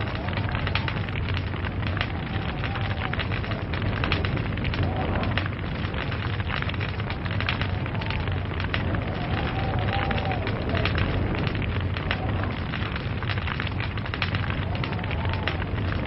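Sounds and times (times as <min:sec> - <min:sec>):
fire crackling and popping: 0:00.0 - 0:16.0
low rumble of burning fire: 0:00.0 - 0:16.0.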